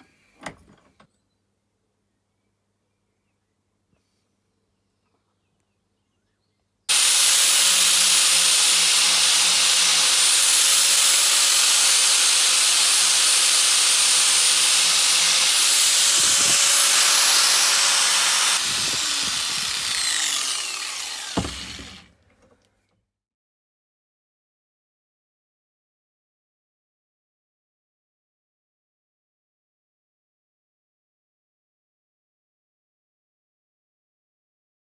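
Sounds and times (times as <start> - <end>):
power tool whining: 6.9 - 22.2.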